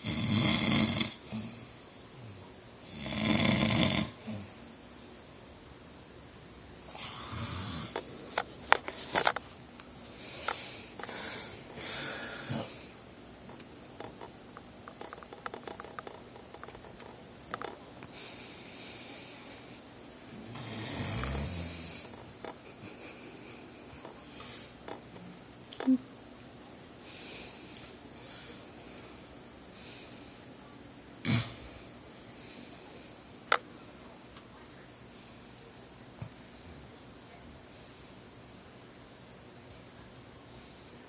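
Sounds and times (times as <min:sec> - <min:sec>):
man snoring: 0:00.0 - 0:04.5, 0:06.9 - 0:08.0, 0:20.5 - 0:22.2.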